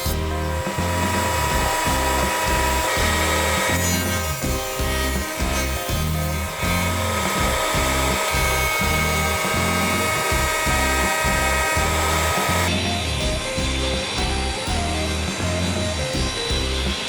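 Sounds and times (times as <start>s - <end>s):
woodworking power tool running: 0.0s - 13.2s
music with steady beat: 0.0s - 17.0s.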